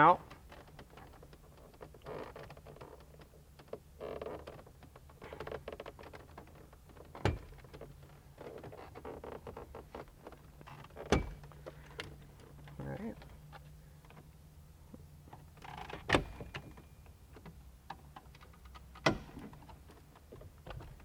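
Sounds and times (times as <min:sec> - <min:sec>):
plastic trim creaking and clicking: 0:00.2 - 0:14.3, 0:15.3 - 0:16.8.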